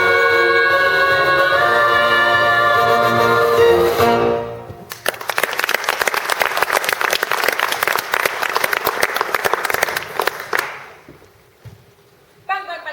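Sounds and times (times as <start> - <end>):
music: 0.0 - 4.9
audience applauding: 4.8 - 11.0.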